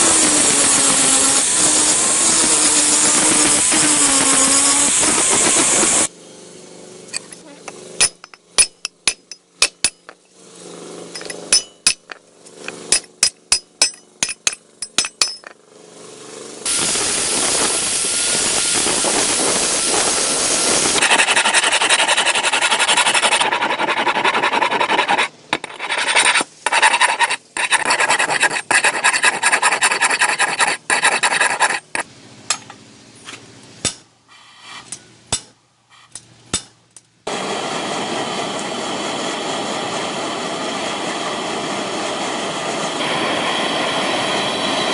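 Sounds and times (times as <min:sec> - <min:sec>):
hammer being filed: 0:11.2 - 0:15.5, 0:21.0 - 0:32.1.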